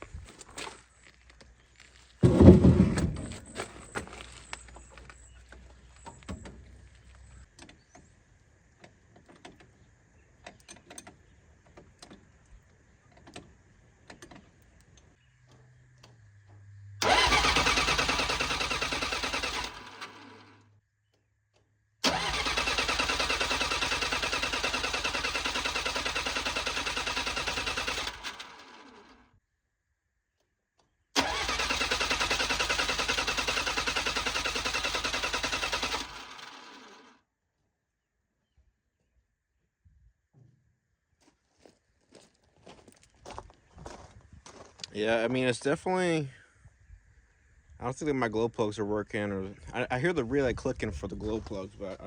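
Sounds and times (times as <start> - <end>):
diesel engine cranking without firing: 2.2 - 8.1, 13.2 - 20.6, 22.0 - 29.2, 31.2 - 37.1.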